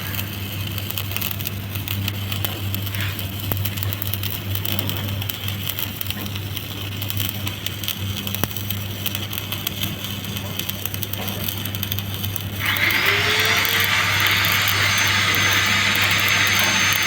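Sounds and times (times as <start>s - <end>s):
welding arc crackling: 0.0s - 17.0s
steady low hum: 12.2s - 17.0s.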